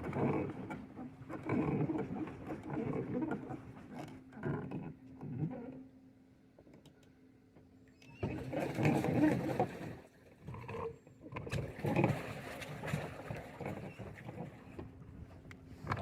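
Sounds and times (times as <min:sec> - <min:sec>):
paddle boat splashing water: 0:08.2 - 0:10.5, 0:11.5 - 0:16.0.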